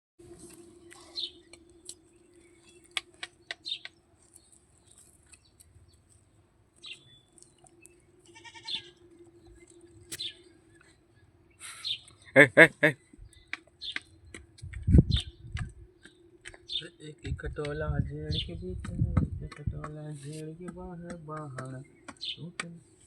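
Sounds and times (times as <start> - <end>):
steady low hum: 0.2 - 23.0
small birds chirping: 0.4 - 23.0
animal pitched cry: 8.3 - 9.0.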